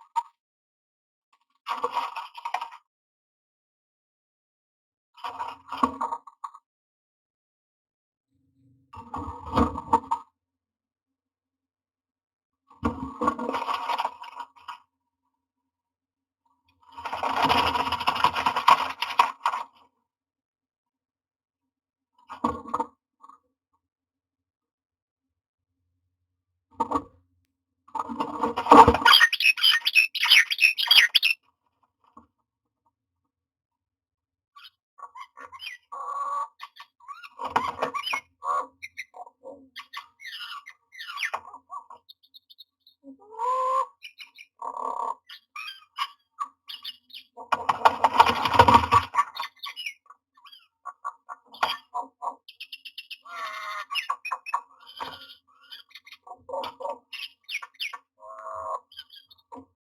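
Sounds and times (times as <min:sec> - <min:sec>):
myna squawking and chattering: 0:28.7 - 0:31.4, 0:34.6 - 0:47.4, 0:48.1 - 0:58.0.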